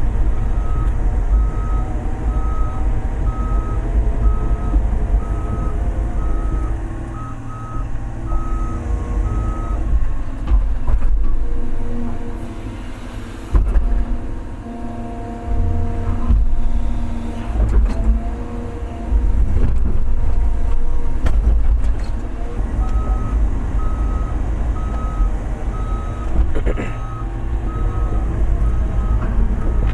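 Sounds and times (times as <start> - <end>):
excavator diesel engine working: 0.0 - 29.9
reversing alarm beeping: 0.5 - 9.8, 22.8 - 26.3, 27.0 - 29.9
heavy machinery clunks: 8.2 - 14.5, 15.4 - 29.9.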